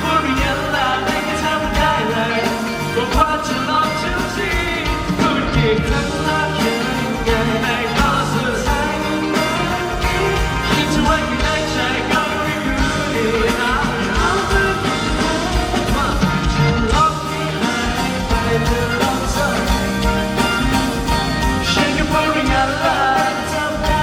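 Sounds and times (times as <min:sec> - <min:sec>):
drum beat: 0:00.0 - 0:24.0
live pop-rock band: 0:00.0 - 0:24.0
person singing: 0:00.0 - 0:24.0.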